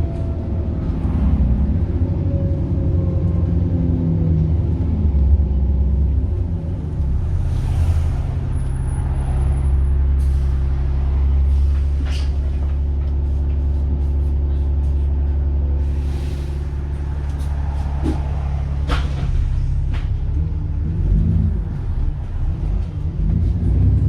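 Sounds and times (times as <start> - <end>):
diesel bus engine running: 0.0 - 24.0
air brakes hissing: 10.2 - 12.4, 15.8 - 17.5.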